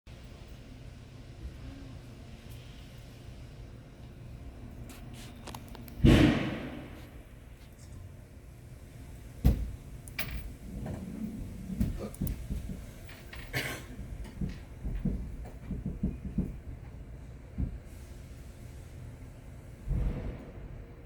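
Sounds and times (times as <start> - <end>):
metal knocks and clunks: 11.7 - 17.8.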